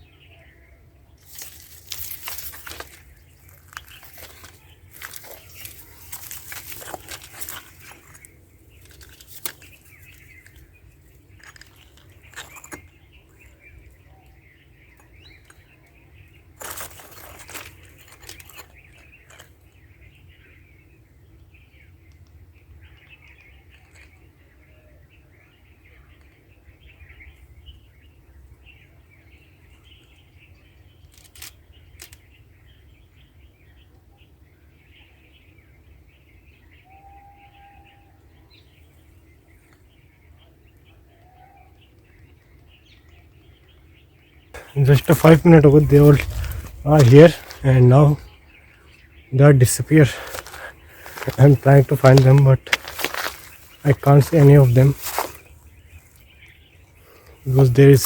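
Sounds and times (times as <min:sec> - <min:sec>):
faint bird chirping: 0:00.0 - 0:58.0
rustling in dry undergrowth: 0:01.2 - 0:14.0, 0:16.5 - 0:19.9, 0:44.6 - 0:58.0
low wind rumble: 0:44.6 - 0:55.1.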